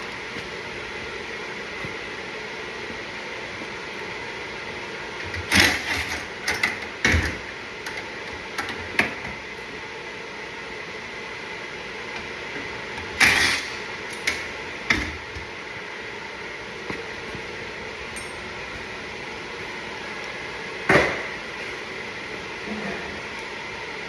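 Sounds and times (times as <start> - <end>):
steady background hum: 0.0 - 24.0
tools knocking and clattering: 18.2 - 18.6.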